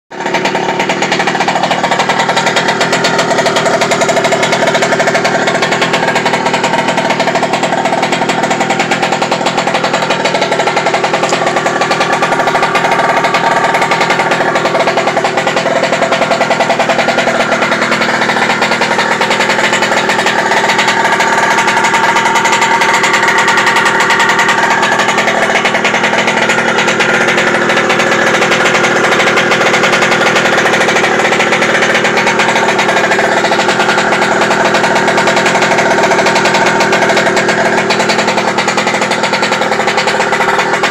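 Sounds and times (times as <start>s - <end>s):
two-stroke engine running: 0.0s - 40.9s.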